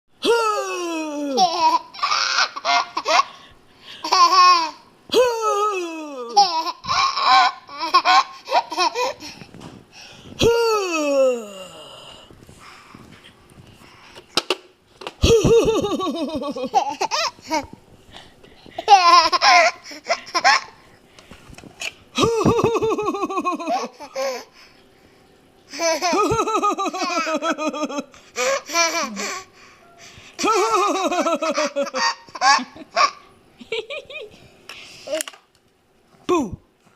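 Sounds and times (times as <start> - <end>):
baby laughing hard: 1.1 - 3.4, 4.0 - 5.5, 6.2 - 9.4, 15.2 - 17.7, 18.8 - 20.8, 22.2 - 24.5, 25.7 - 29.5, 30.4 - 34.3.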